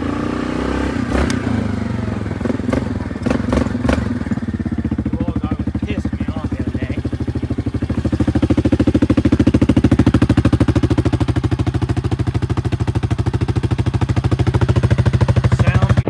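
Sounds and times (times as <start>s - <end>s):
atv engine running: 0.0s - 16.0s.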